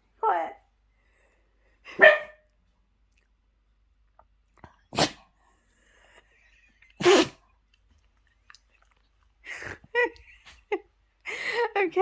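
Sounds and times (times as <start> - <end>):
dog sneezing: 4.9 - 5.2, 7.0 - 7.4.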